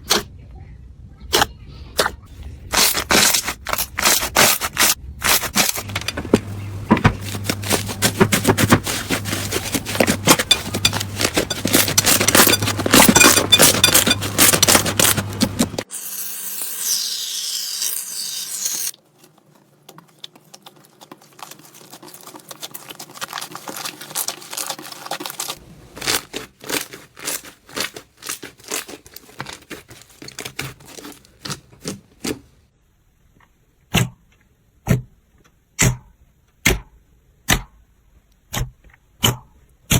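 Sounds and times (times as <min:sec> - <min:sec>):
slime crackling and popping: 0:20.0 - 0:32.3.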